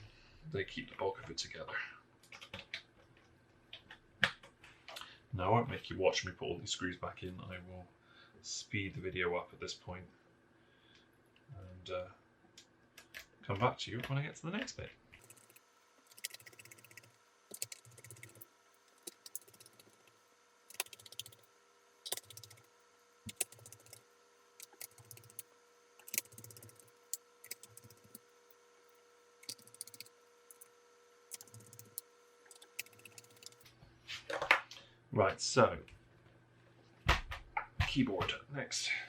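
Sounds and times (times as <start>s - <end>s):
screwdriver clicking on screws: 15.2s - 21.5s, 22.1s - 22.7s, 23.3s - 24.0s, 24.6s - 25.4s, 26.0s - 28.6s, 29.4s - 30.7s, 31.3s - 33.6s.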